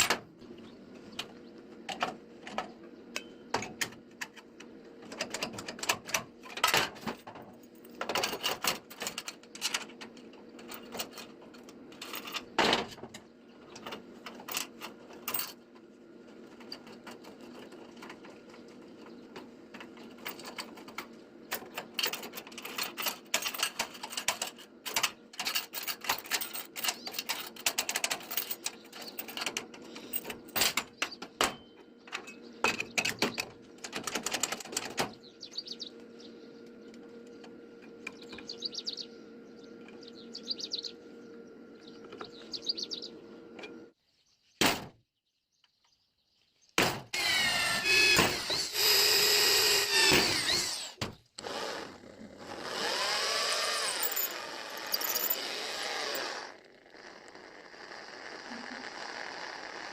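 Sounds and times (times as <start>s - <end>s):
steady low hum: 28.2s - 44.0s.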